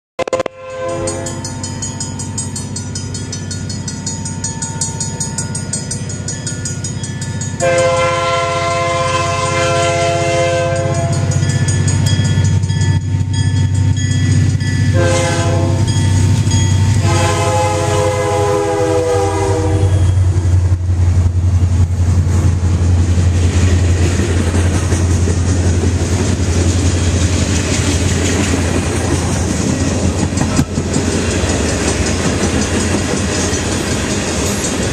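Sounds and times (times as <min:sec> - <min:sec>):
train air horn: 0:00.2 - 0:01.4, 0:07.6 - 0:11.3, 0:14.9 - 0:15.9, 0:17.0 - 0:20.5
diesel engines rumbling: 0:01.1 - 0:34.9
wheels clicking over rail joints: 0:22.7 - 0:34.9.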